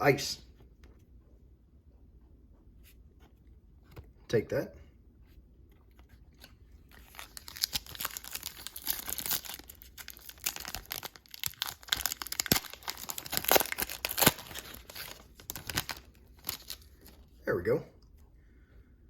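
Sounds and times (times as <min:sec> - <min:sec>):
wrapper crinkling: 0:06.8 - 0:17.2.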